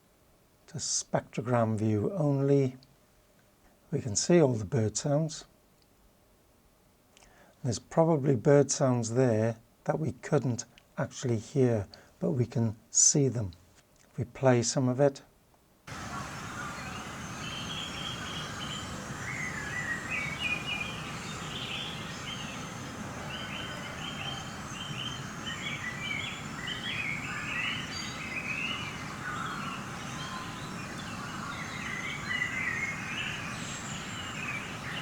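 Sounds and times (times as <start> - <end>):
birds singing and chirping: 15.9 - 35.0.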